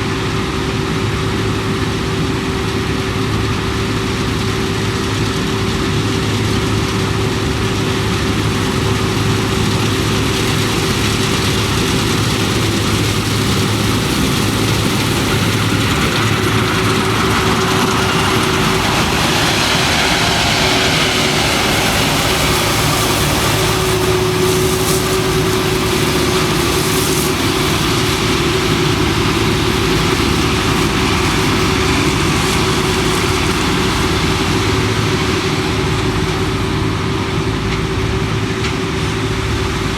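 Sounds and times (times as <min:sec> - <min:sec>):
constant machine whine: 0:00.0 - 0:39.9
low engine hum: 0:00.0 - 0:39.9
rushing hissing noise: 0:07.1 - 0:35.7.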